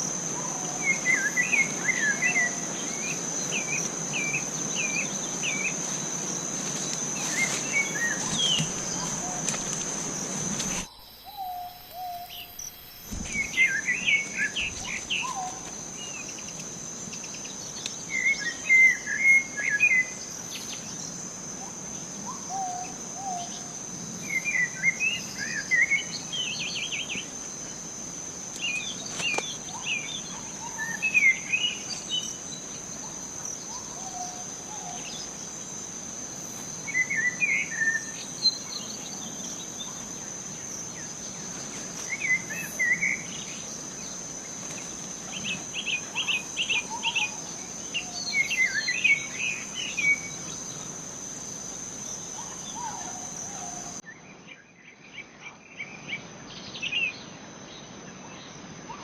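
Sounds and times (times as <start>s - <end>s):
high-pitched insect drone: 0.0s - 54.0s.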